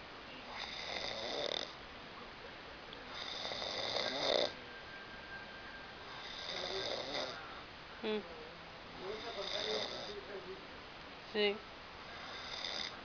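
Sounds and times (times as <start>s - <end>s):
man snoring loudly: 0.6s - 1.8s, 3.1s - 4.6s, 6.1s - 7.4s, 9.2s - 10.2s, 12.1s - 13.0s.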